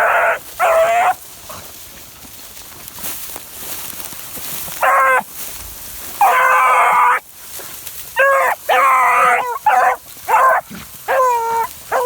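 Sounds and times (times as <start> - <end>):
hounds baying: 0.0 - 1.8, 4.6 - 12.0.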